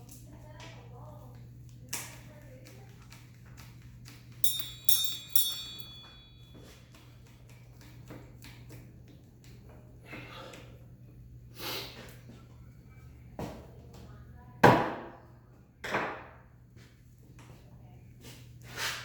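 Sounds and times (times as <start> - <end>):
steady low hum: 0.0 - 15.8
metal parts clinking: 4.4 - 6.7
metal strikes ringing: 4.4 - 6.8.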